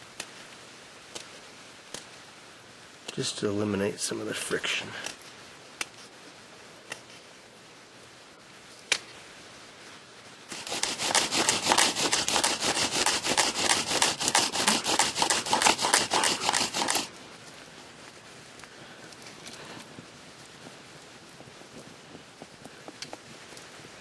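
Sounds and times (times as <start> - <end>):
bow drill rubbing strokes: 10.5 - 17.1.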